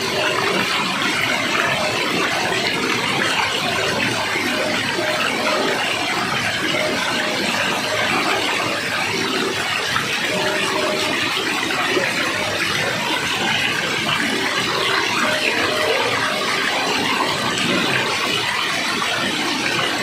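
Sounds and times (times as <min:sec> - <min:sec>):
water rushing: 0:00.0 - 0:20.0.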